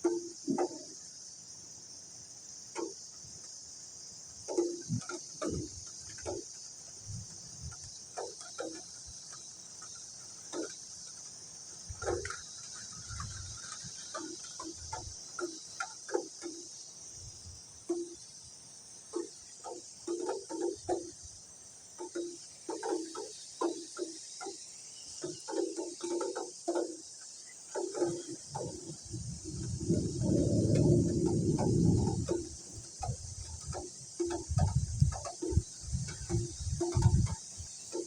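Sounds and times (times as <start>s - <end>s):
rain hiss: 0.0s - 38.0s
water dripping: 25.2s - 38.0s
low rumbles: 28.7s - 33.7s.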